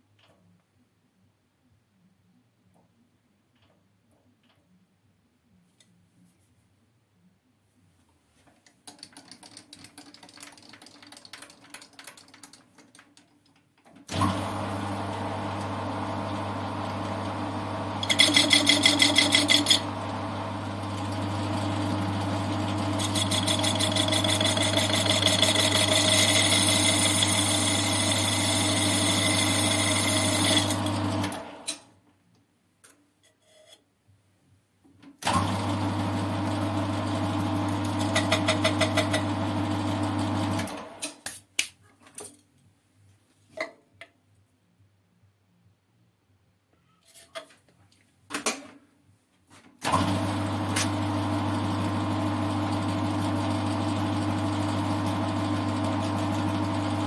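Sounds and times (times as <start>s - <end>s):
lathe motor hum: 14.1s - 31.7s, 49.9s - 57.0s
lathe cutting tool noise: 14.1s - 31.8s, 35.3s - 40.9s, 49.9s - 57.0s.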